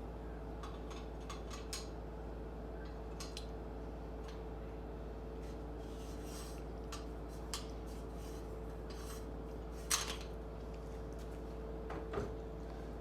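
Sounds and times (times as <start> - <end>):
steady low hum: 0.0 - 13.0
scraping and rubbing: 5.8 - 6.6, 7.8 - 9.9.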